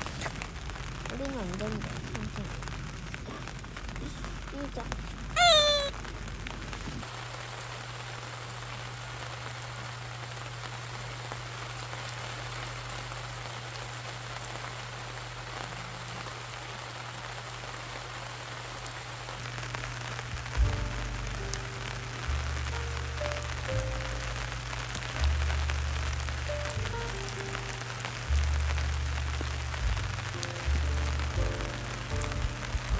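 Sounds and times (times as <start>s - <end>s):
rain falling: 0.0s - 32.9s
short high-pitched cry: 5.4s - 5.9s.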